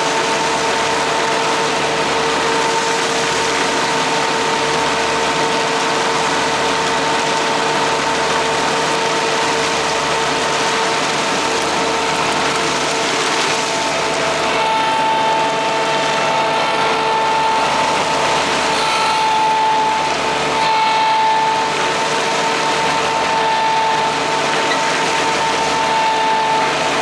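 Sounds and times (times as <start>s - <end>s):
diesel engine running: 0.0s - 27.0s
high whine: 12.2s - 27.0s.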